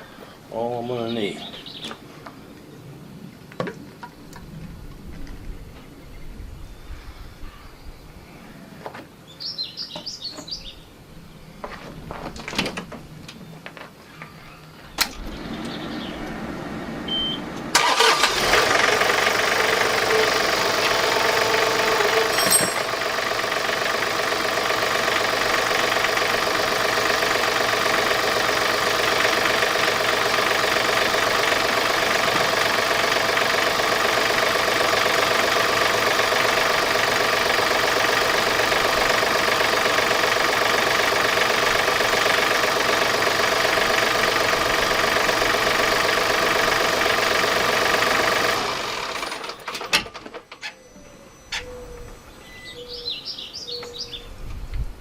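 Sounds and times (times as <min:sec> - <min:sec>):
tractor diesel engine starting: 0:15.0 - 0:53.2
light metal clanks: 0:22.3 - 0:22.9.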